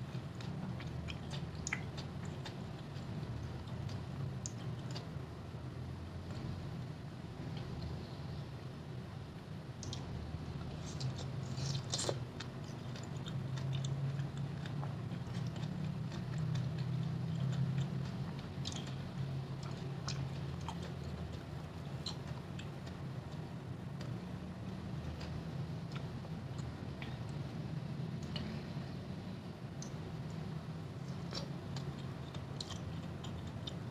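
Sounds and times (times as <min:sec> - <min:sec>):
chewing crisp fruit: 0:00.0 - 0:05.2, 0:09.8 - 0:24.2, 0:29.8 - 0:33.9
low steady hum: 0:00.0 - 0:33.9.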